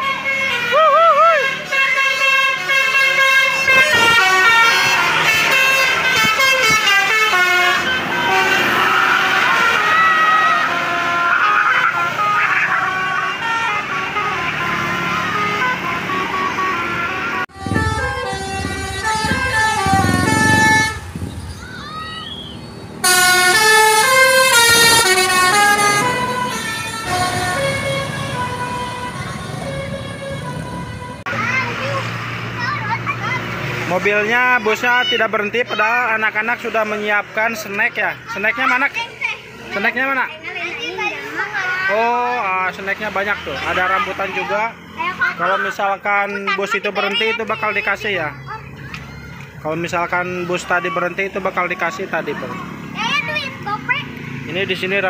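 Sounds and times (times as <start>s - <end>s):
musical air horn playing a tune: 0.0s - 21.1s, 23.0s - 31.2s.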